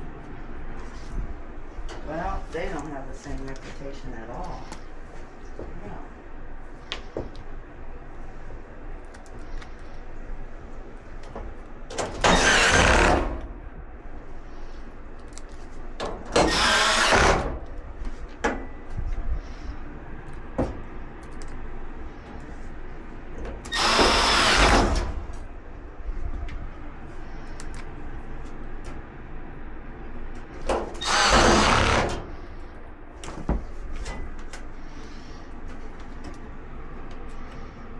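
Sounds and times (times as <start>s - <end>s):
power drill driving screws: 12.2s - 13.4s, 16.4s - 17.5s, 23.7s - 25.4s, 31.0s - 32.5s
light clicks and parts handling: 15.1s - 16.2s, 21.2s - 22.7s, 26.4s - 29.0s.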